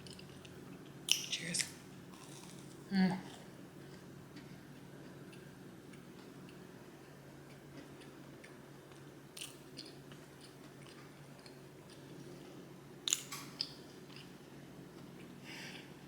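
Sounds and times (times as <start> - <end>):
person chewing food: 0.0 - 1.2, 2.1 - 16.0
crunchy bites: 2.1 - 2.8.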